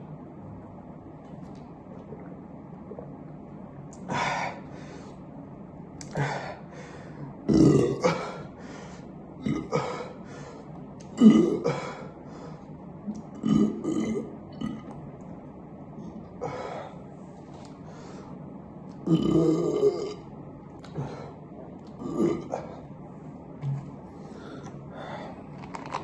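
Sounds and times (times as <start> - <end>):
person burping: 7.5 - 8.4, 9.4 - 10.1, 11.2 - 12.0, 13.4 - 15.0, 19.0 - 20.2, 22.0 - 22.7.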